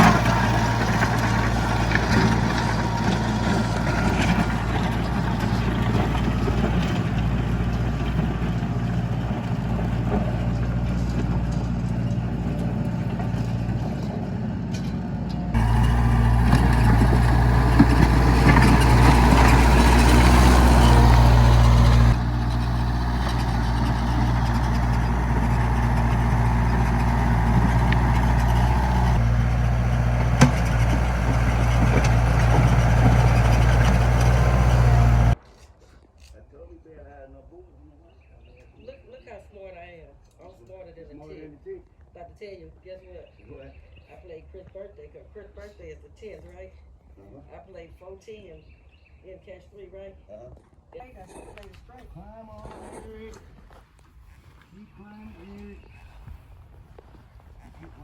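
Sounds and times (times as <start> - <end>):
heavy machinery engine running: 0.0 - 35.4.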